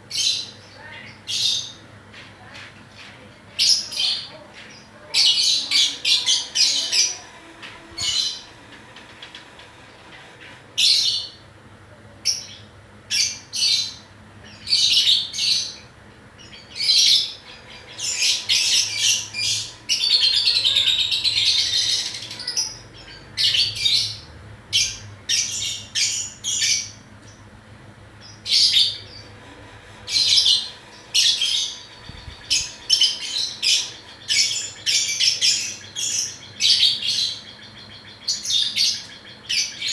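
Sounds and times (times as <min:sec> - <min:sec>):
bird warbling chatter: 0:00.1 - 0:11.5, 0:12.3 - 0:27.4, 0:28.3 - 0:39.9
bird chirping: 0:12.3 - 0:27.5, 0:30.0 - 0:39.9.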